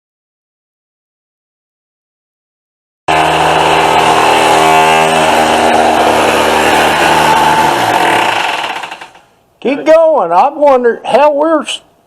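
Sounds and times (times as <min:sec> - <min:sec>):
electric chipping hammer hammering: 0:03.1 - 0:09.2.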